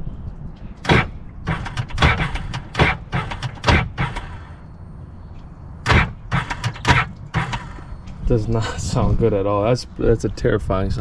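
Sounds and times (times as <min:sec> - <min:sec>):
starter motor clunking: 0:00.8 - 0:04.6, 0:05.8 - 0:07.9.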